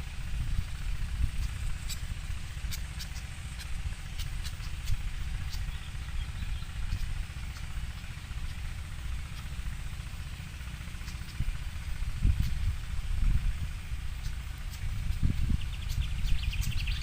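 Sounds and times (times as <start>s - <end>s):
wind buffeting microphone: 0.0s - 2.7s, 11.4s - 17.0s.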